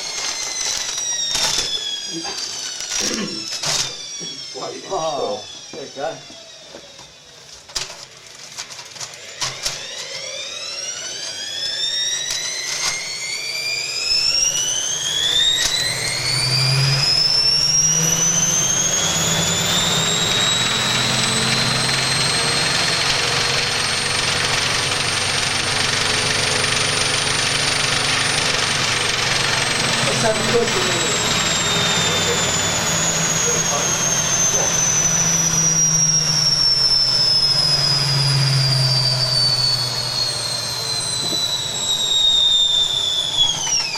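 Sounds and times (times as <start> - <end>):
washing machine drum spinning: 14.6 - 43.2.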